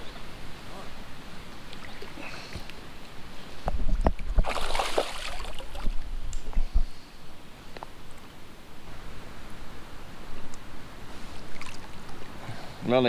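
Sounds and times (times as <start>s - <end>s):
water splashing around raft: 4.4s - 5.9s.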